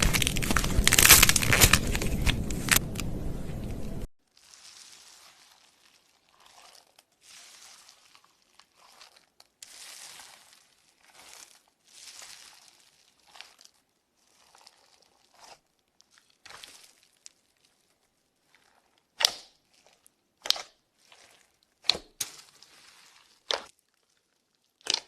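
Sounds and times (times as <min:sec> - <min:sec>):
slime popping: 0:00.0 - 0:02.8, 0:23.1 - 0:23.7, 0:24.8 - 0:25.0
slime crackling: 0:00.0 - 0:25.0.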